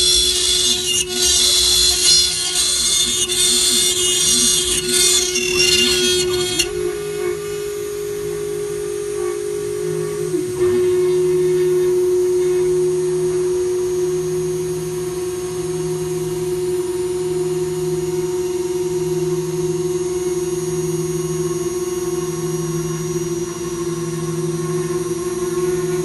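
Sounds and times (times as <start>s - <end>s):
router spindle whine: 0.0s - 26.0s
low hum: 3.0s - 21.5s.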